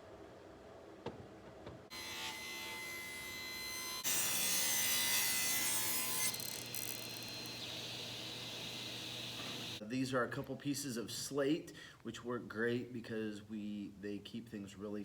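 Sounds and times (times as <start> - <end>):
power tool cutting wood: 1.9 - 9.8
power tool whining: 1.9 - 9.8.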